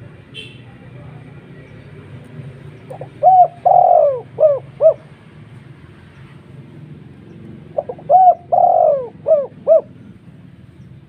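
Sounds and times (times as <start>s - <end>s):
dove cooing: 2.8s - 5.2s, 7.6s - 10.0s.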